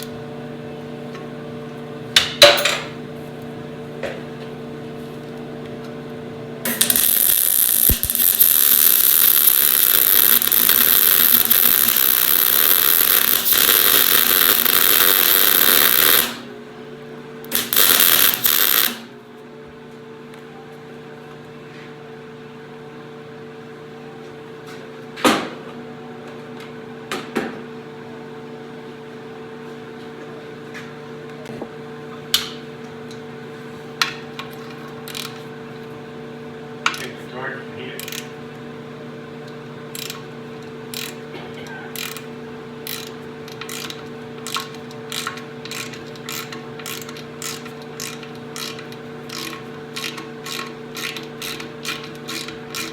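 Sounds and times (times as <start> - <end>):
steady machine hum: 0.0 - 21.0, 31.3 - 52.9
welder arcing: 6.7 - 16.5, 17.4 - 19.1, 42.9 - 52.9.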